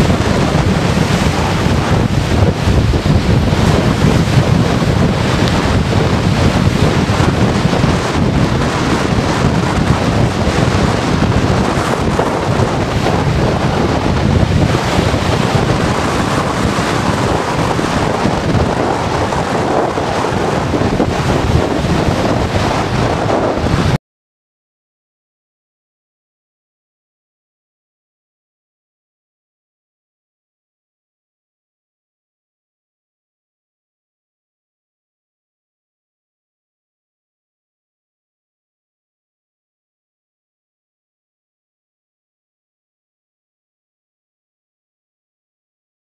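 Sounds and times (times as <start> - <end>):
storm wind buffeting microphone: 0.0 - 24.0.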